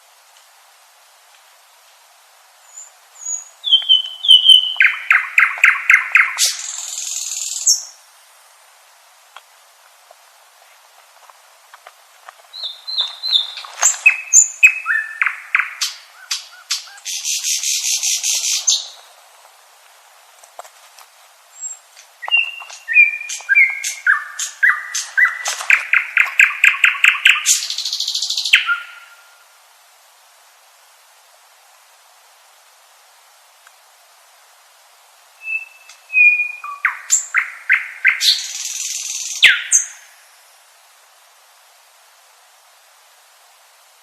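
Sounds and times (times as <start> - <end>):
nightingale singing: 2.6 - 8.1, 12.4 - 19.1, 21.5 - 29.4, 35.3 - 40.5.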